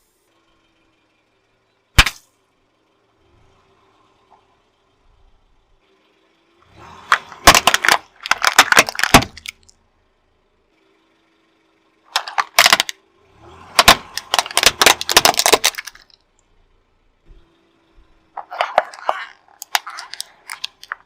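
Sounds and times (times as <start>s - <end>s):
sharp crack: 1.9s - 2.3s, 7.1s - 9.8s, 13.8s - 16.2s
car tyre crushing brittle object: 2.0s - 2.3s, 7.0s - 9.8s, 12.1s - 16.2s, 18.4s - 21.0s.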